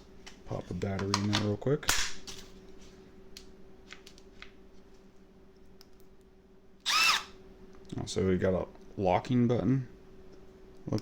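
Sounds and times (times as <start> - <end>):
drill motor whirring: 6.8 - 7.4.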